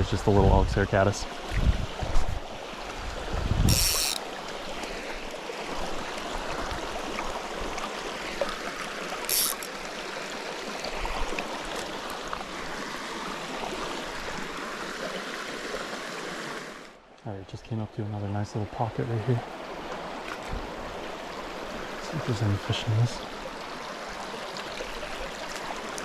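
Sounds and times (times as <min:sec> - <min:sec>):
stream rushing over rocks: 0:01.2 - 0:17.0, 0:19.1 - 0:26.0
high hissing rustles: 0:03.7 - 0:04.2, 0:09.3 - 0:09.8.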